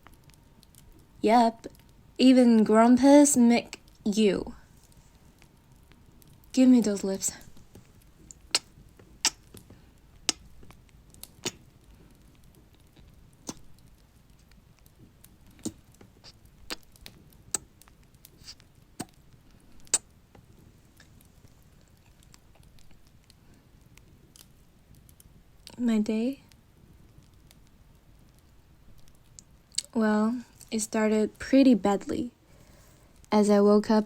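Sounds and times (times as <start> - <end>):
wet kissing smacks: 8.5 - 9.4.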